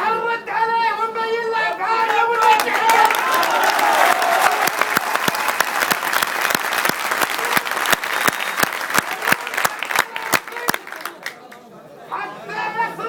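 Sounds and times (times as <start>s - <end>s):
crowd applauding: 2.0s - 11.6s.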